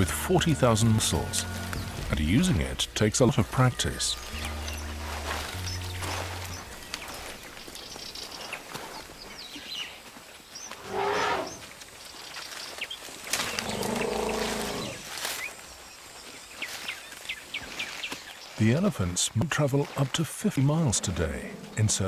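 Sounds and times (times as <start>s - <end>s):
elephant calf calling: 0.0s - 7.4s, 10.8s - 11.7s, 13.4s - 15.1s, 20.6s - 22.0s.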